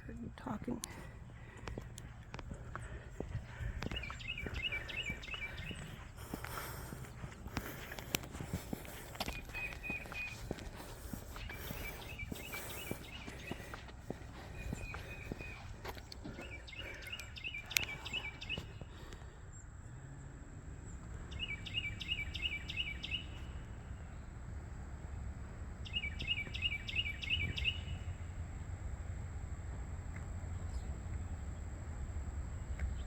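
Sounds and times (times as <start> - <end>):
songbird singing: 0.0 - 24.5, 25.7 - 28.7, 30.0 - 33.0
outdoor background noise: 0.0 - 33.0
footsteps: 0.4 - 17.0.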